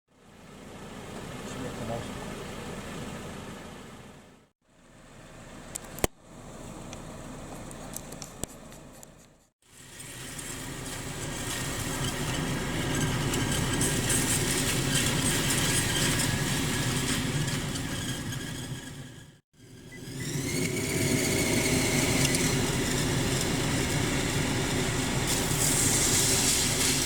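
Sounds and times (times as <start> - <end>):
car engine idling: 0.1 - 8.4.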